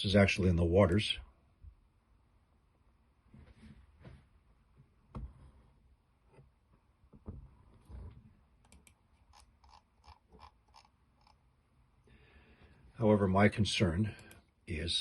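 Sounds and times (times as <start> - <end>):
computer mouse clicks: 8.6 - 11.4, 14.2 - 14.5.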